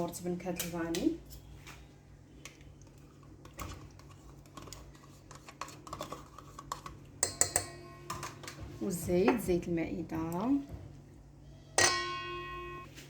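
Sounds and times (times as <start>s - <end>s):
spoon tapping on bowl: 7.2s - 8.6s.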